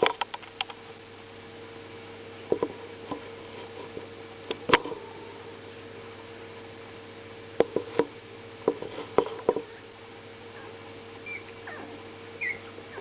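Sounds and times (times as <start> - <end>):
electrical hum: 0.0 - 13.0
puppy squeaking: 10.6 - 13.0.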